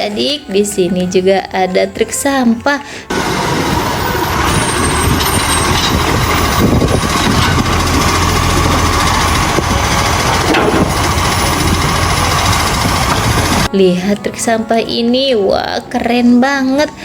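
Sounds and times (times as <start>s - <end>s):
truck engine idling: 3.1s - 13.7s.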